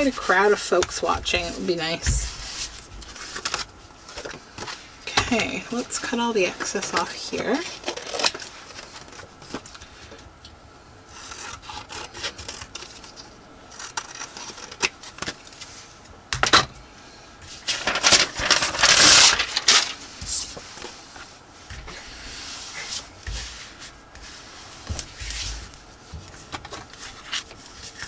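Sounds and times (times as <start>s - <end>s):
paper rustling: 0.0s - 10.3s, 17.4s - 28.0s
scissors snipping paper: 6.5s - 9.3s, 11.2s - 15.4s.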